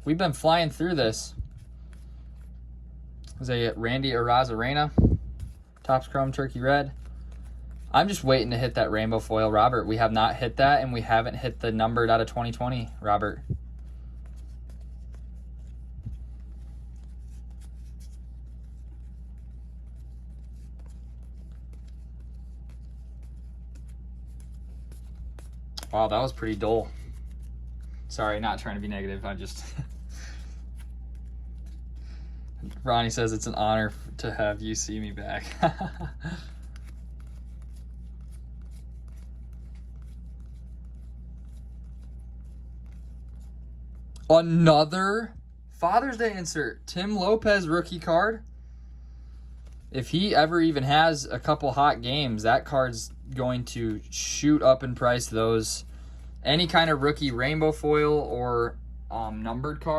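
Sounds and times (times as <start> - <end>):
steady low hum: 0.0 - 59.9
cards being flipped through: 1.4 - 2.6, 4.5 - 9.7, 10.9 - 44.3, 49.3 - 54.1.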